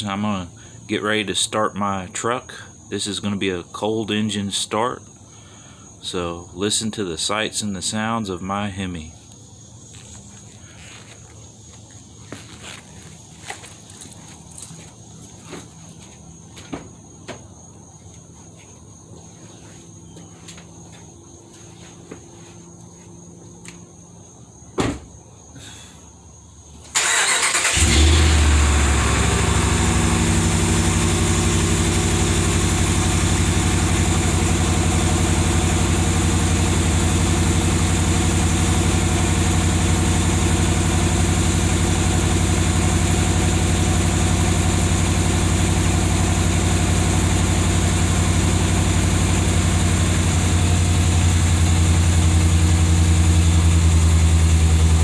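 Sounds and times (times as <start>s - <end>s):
car engine starting and idling: 26.9s - 55.0s.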